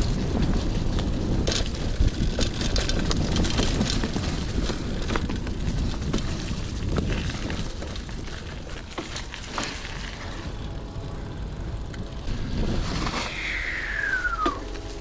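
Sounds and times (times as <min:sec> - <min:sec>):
bike rattles and clicks: 0:00.0 - 0:15.0
bike tyre rumble on dirt: 0:00.0 - 0:15.0
wind buffeting microphone: 0:00.0 - 0:15.0
whistle gliding down: 0:13.1 - 0:15.0.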